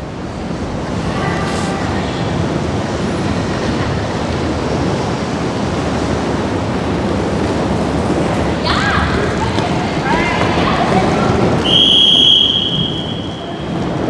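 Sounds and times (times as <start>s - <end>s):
roller skate wheels rumbling: 0.0s - 14.0s.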